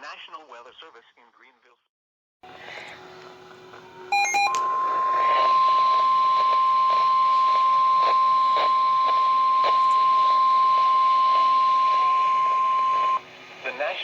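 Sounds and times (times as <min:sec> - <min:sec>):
faint radio hiss: 0:02.5 - 0:14.0
steady alarm tone: 0:04.0 - 0:13.3
short beeps: 0:04.1 - 0:13.2.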